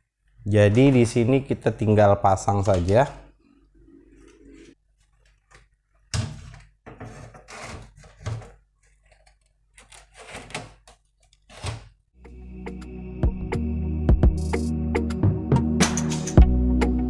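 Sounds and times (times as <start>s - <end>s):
parts scraping against case: 6.9s - 11.8s.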